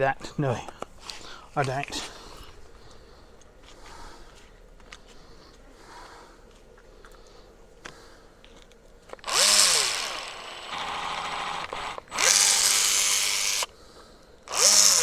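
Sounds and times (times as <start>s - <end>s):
power tool whining: 9.2s - 13.7s, 14.5s - 15.0s.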